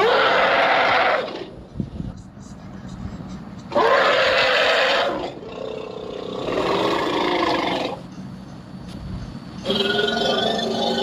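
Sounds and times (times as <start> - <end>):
dinosaur roar: 0.0 - 1.6, 3.8 - 8.0, 9.6 - 11.0.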